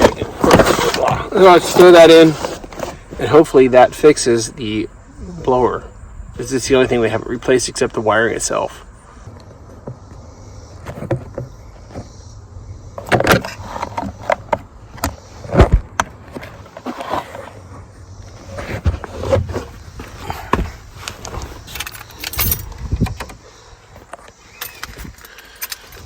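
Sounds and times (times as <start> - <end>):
metal tools clicking and clinking: 21.7 - 22.9.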